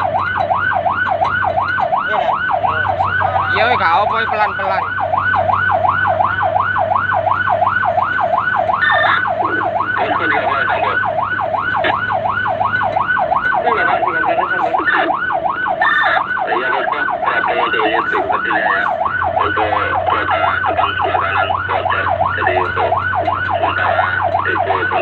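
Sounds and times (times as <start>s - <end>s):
fire engine siren yelping: 0.0s - 25.0s
truck engine drone: 0.0s - 25.0s.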